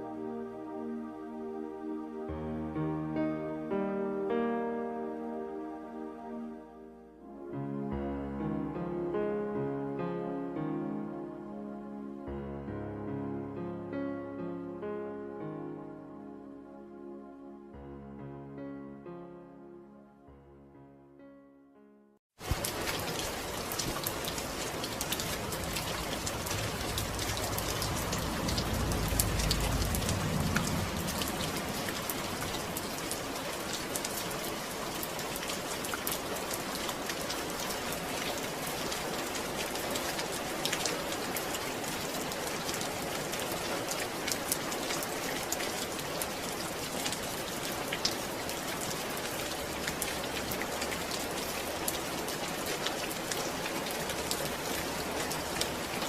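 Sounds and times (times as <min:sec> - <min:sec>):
steady rain falling: 0:22.4 - 0:56.0
low rumble: 0:26.3 - 0:32.4.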